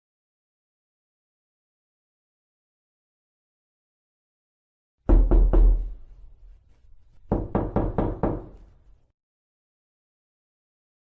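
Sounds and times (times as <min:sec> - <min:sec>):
knocking on a door: 0:05.1 - 0:06.0, 0:07.3 - 0:08.6.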